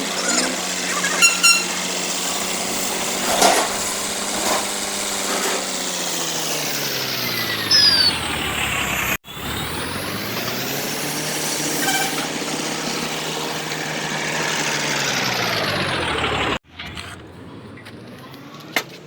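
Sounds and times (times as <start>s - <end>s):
truck engine running: 0.0s - 19.0s.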